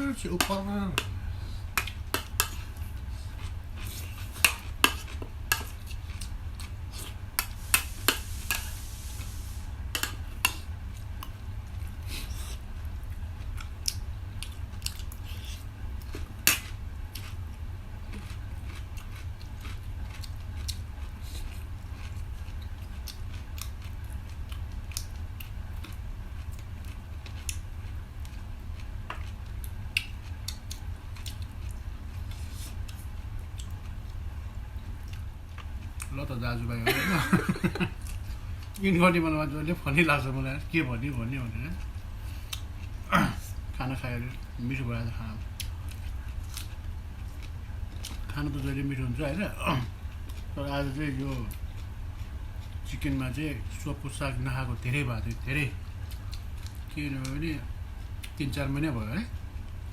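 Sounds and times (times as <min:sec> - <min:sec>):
chewing: 0:01.8 - 0:07.5, 0:10.0 - 0:34.3, 0:41.7 - 0:43.6, 0:45.1 - 0:48.4, 0:49.5 - 0:52.9, 0:55.9 - 0:57.4.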